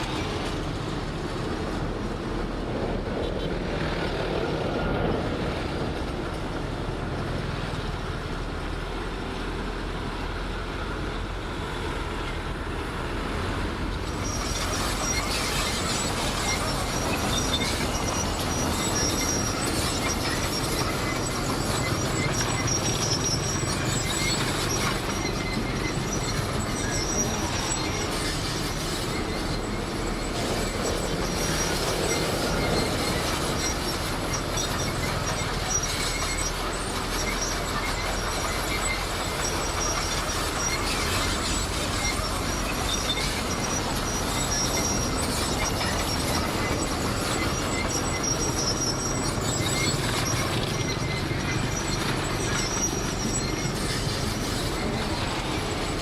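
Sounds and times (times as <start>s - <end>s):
bulldozer engine rumble: 0.0s - 56.0s
steel tracks squealing and clanking: 0.0s - 56.0s
high-pitched squeal: 13.4s - 56.0s.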